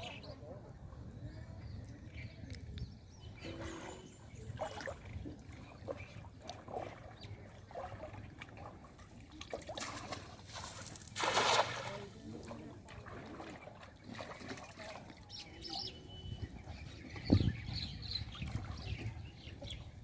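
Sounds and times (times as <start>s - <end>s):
water sloshing and trickling: 1.8s - 20.0s
rush of water: 3.4s - 15.6s
small splashes: 3.5s - 15.4s.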